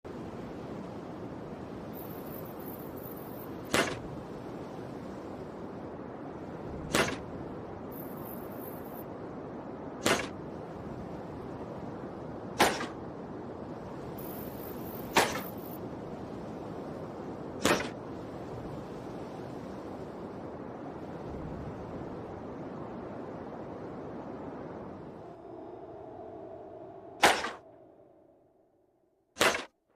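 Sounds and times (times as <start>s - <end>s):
steady background hiss: 0.1s - 29.7s
bow and arrow shots: 3.7s - 4.0s, 6.9s - 7.2s, 10.0s - 10.4s, 12.6s - 13.0s, 15.1s - 15.5s, 17.6s - 18.0s, 27.2s - 27.6s, 29.4s - 29.8s.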